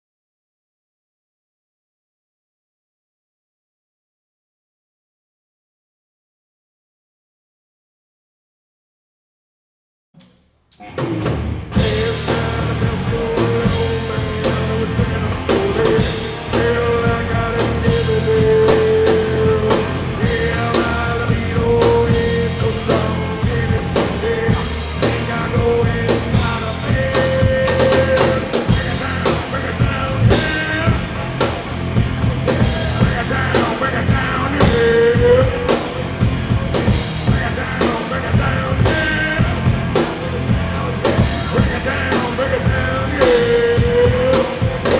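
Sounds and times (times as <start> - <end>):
rock music with drums: 10.8 - 44.9
person singing: 11.8 - 44.9.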